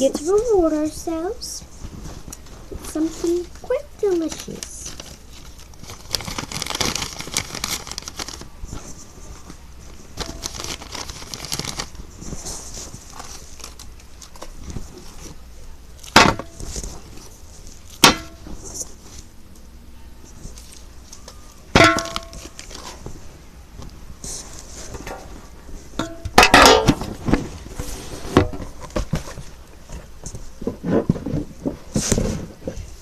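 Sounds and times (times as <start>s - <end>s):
wrapper tearing and crinkling: 4.2s - 8.9s, 9.9s - 15.4s, 20.5s - 23.1s.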